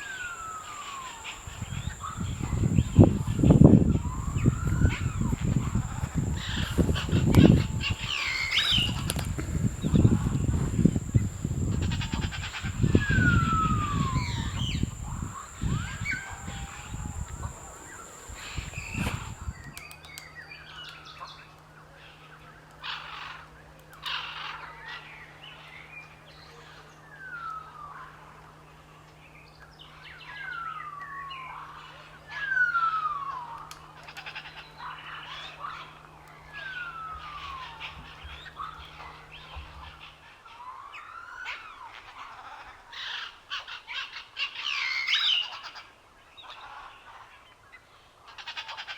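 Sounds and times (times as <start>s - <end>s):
songbirds chirping: 0.0s - 21.1s.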